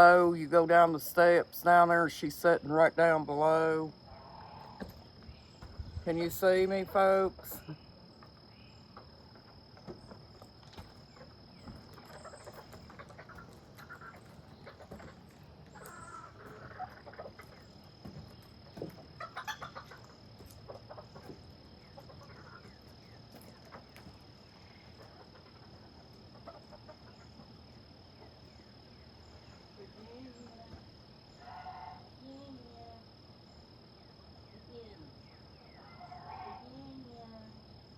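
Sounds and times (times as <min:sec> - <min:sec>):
high insect trill: 0:00.0 - 0:37.9
chickens clucking faintly: 0:07.4 - 0:32.5.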